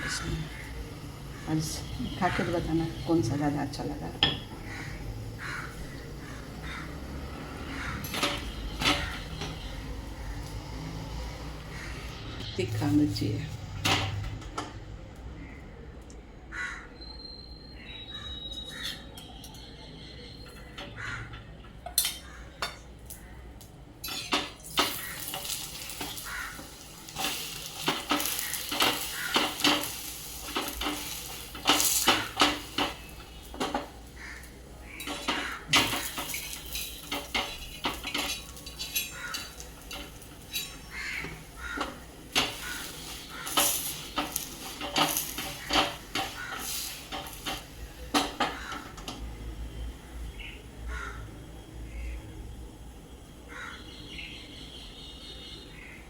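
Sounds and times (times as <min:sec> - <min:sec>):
flatbread sizzling on a griddle: 0:00.0 - 0:12.4, 0:24.0 - 0:50.2
utensil scraping and clinking on pan: 0:24.0 - 0:49.2.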